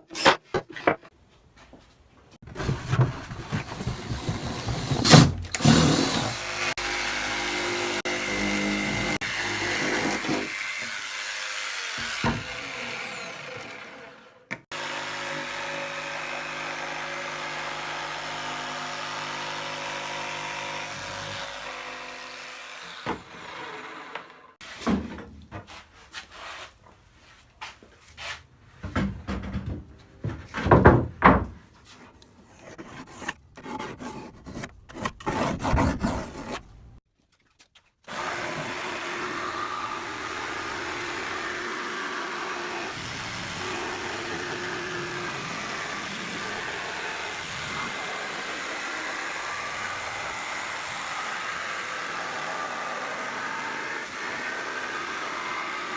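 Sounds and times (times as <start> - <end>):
woodworking power tool running: 4.0 - 24.6, 38.1 - 55.9.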